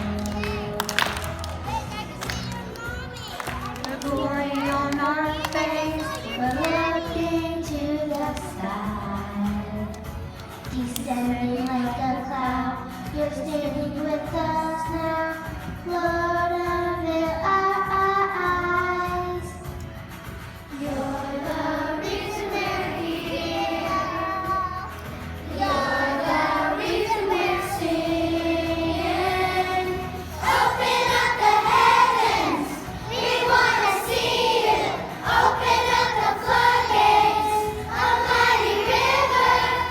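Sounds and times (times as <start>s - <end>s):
children singing: 0.0s - 0.8s, 20.7s - 39.9s.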